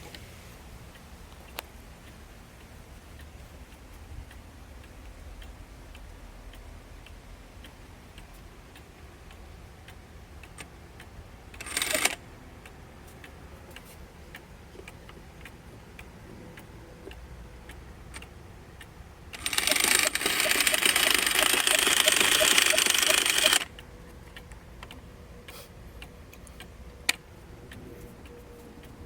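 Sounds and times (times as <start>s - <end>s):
clock ticking: 0.0s - 29.0s.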